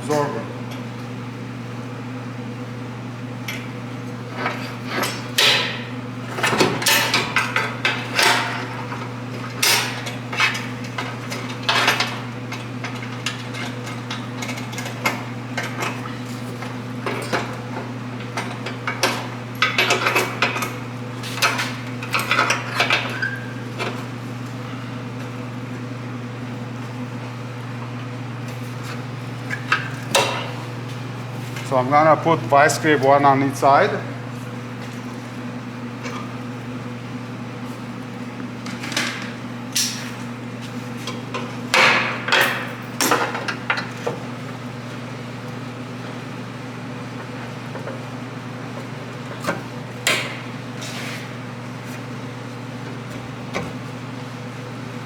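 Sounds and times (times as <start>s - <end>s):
steady low hum: 27.2s - 38.2s.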